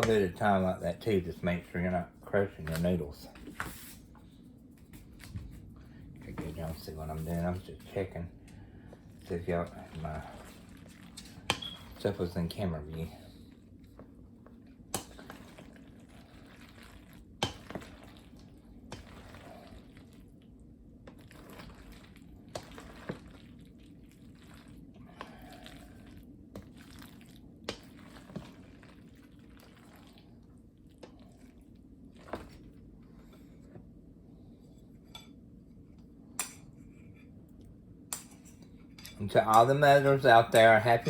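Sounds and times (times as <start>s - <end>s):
low steady hum: 0.0s - 41.0s
wet stirring in a bowl: 1.3s - 34.0s.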